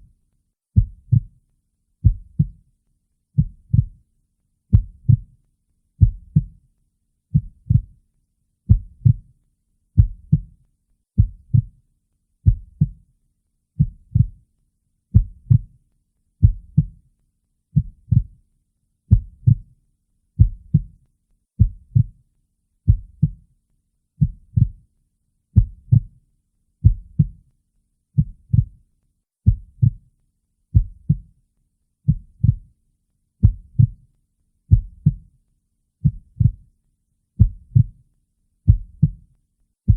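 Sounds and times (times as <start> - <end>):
heartbeat double thumps: 0.8 - 1.3, 2.0 - 2.6, 11.2 - 11.7, 12.5 - 13.0, 19.1 - 19.6, 20.4 - 20.9, 21.6 - 22.1, 22.9 - 23.4, 29.4 - 30.0, 30.8 - 31.2, 33.4 - 34.0, 34.7 - 35.2, 37.4 - 37.9, 38.7 - 39.2.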